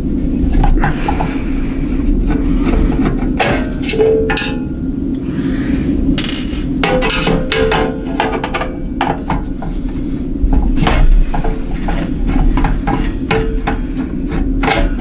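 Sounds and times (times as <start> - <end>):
steady low hum: 0.0 - 15.0
screwdriver clinking on metal case: 3.4 - 4.8, 6.2 - 9.4.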